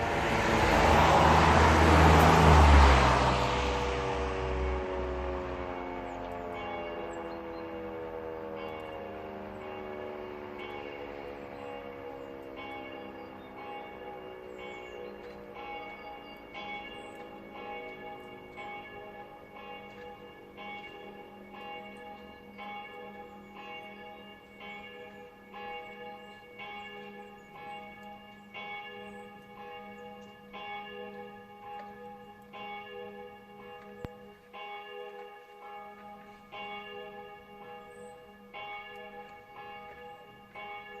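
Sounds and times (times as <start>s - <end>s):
church bell ringing: 0.0s - 41.0s.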